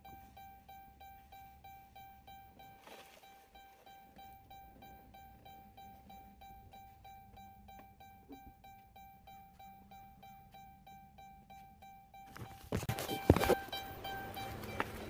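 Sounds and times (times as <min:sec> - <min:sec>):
rustling clatter: 0:12.3 - 0:15.0.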